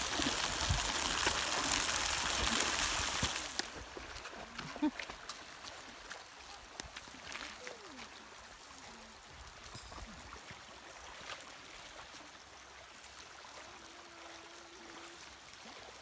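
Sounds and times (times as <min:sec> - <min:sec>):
water rushing over rocks: 0:00.0 - 0:06.0.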